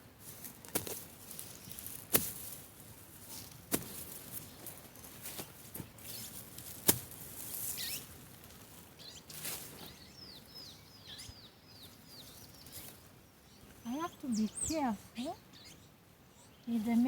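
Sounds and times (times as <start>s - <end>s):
rustling stems: 0.2s - 10.0s
small bird chirping: 7.6s - 8.1s, 9.0s - 17.0s.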